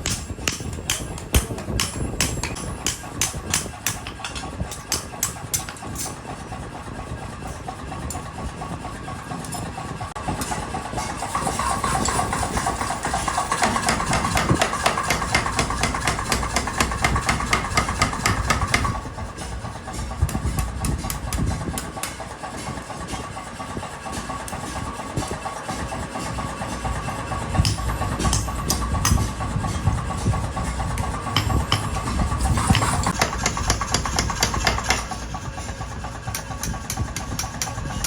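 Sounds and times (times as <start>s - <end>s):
workshop machine running: 0.0s - 38.0s
rapid metallic knocks: 25.6s - 38.0s.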